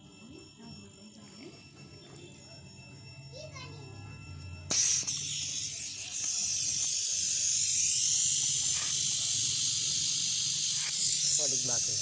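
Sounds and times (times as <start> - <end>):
compressed air hissing: 4.7 - 12.0.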